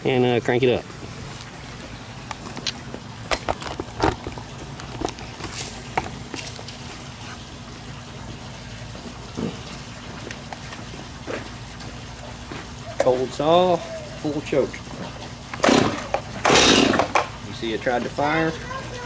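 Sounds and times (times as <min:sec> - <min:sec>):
chainsaw handling clicks and knocks: 0:02.3 - 0:06.8, 0:15.5 - 0:17.4.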